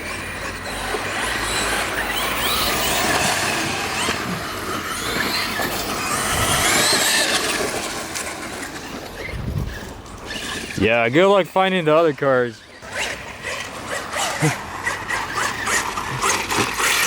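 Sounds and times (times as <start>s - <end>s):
rc car motors whining: 0.0s - 17.0s
steady rushing noise: 2.8s - 12.5s.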